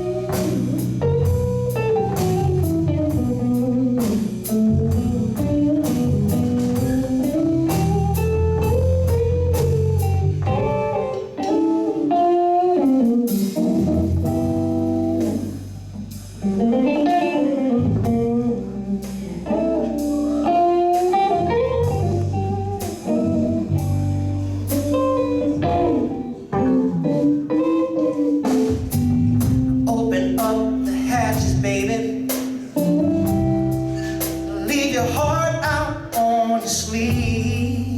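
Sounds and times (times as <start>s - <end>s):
bass: 0.0s - 37.9s
blues guitar lead: 0.0s - 37.9s
drums: 0.0s - 37.9s.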